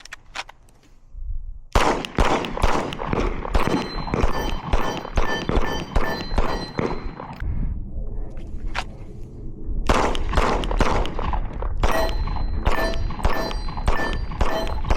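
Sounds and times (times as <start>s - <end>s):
pistol shots: 1.7s - 7.4s, 9.9s - 14.9s
steel targets ringing: 3.7s - 7.3s, 11.9s - 14.9s.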